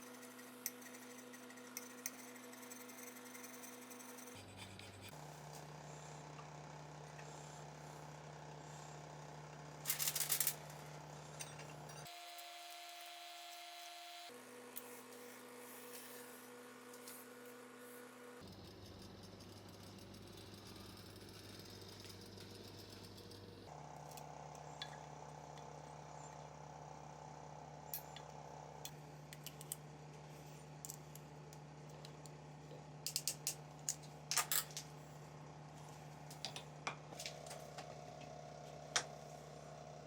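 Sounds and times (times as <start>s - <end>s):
metal parts and tools clicking: 9.9s - 10.6s, 33.1s - 34.8s.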